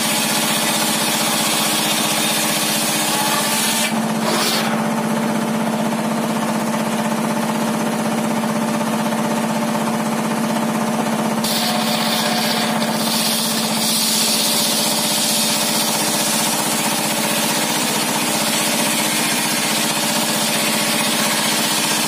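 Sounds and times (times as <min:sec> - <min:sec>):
saw blade cutting wood: 0:00.0 - 0:05.0, 0:11.4 - 0:22.0
table saw humming: 0:00.0 - 0:05.3, 0:11.4 - 0:22.0.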